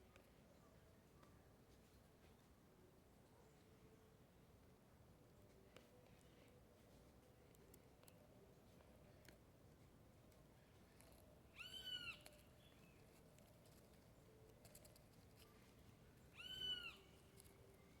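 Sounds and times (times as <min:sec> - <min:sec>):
bird mewing call: 0:16.4 - 0:17.1.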